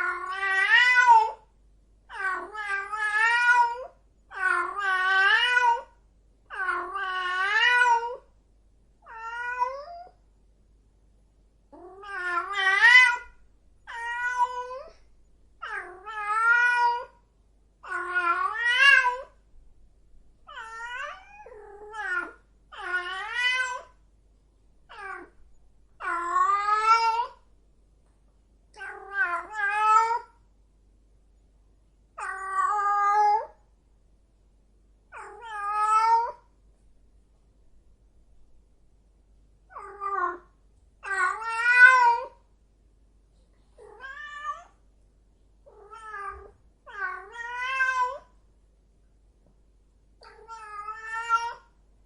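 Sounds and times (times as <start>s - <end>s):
cat yowling: 0.0s - 1.4s, 2.1s - 8.2s, 9.0s - 10.2s, 11.8s - 13.3s, 13.9s - 15.0s, 15.6s - 17.2s, 17.8s - 19.4s, 20.5s - 23.9s, 24.9s - 25.4s, 26.0s - 27.4s, 28.8s - 30.3s, 32.2s - 33.6s, 35.1s - 36.4s, 39.7s - 42.4s, 43.8s - 44.8s, 45.7s - 48.3s, 50.2s - 51.7s.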